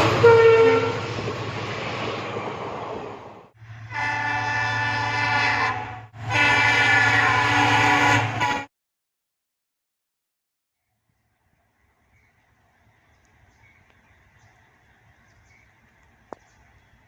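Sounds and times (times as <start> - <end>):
locomotive air horn blasts: 0.0 - 1.1, 3.7 - 8.7
train noise: 0.0 - 8.7, 11.5 - 17.0.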